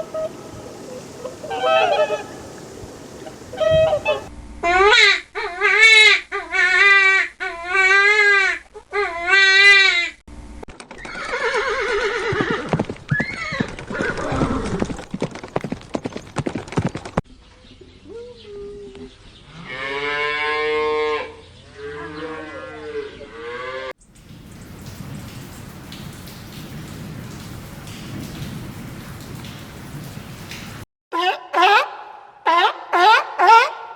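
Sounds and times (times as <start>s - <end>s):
farm animal calls: 0.0s - 5.7s.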